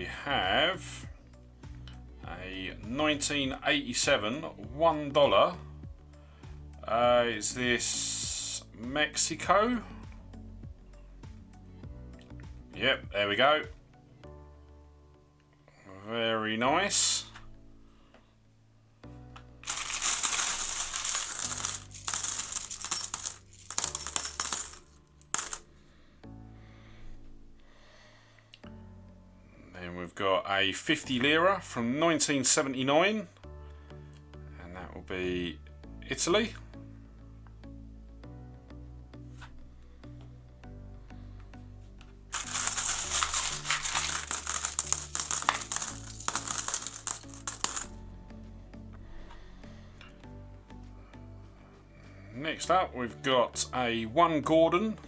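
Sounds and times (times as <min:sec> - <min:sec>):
soft background music: 0:00.0 - 0:55.0
coins jingling in a tub: 0:19.6 - 0:25.7, 0:42.3 - 0:48.0.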